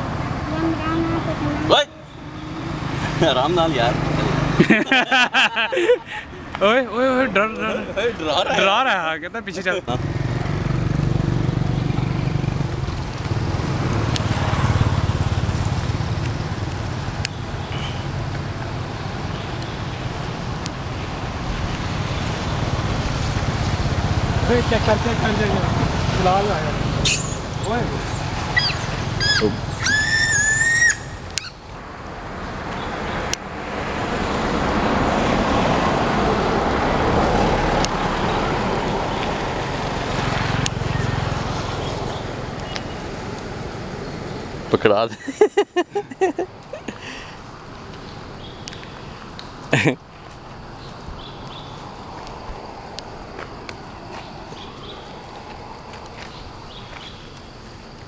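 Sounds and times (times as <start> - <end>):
road traffic noise: 0.0 - 58.0
high whistle-like call: 28.6 - 31.6.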